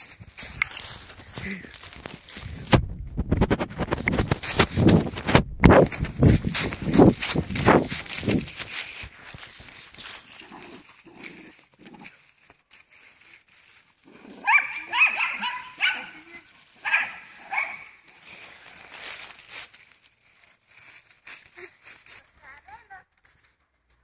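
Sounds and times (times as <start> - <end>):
dogs scuffling: 0.0 - 22.5
dog growling: 10.3 - 12.2
dogs barking and yelping: 14.2 - 18.0.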